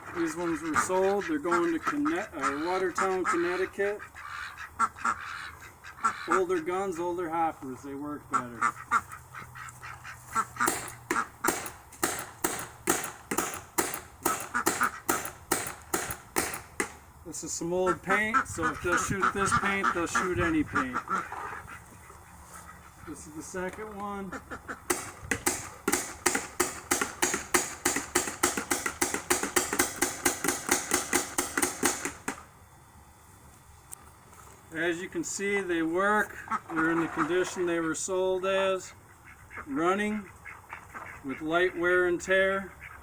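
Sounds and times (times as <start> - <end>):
paintball gun firing: 10.6 - 17.0, 24.9 - 32.4.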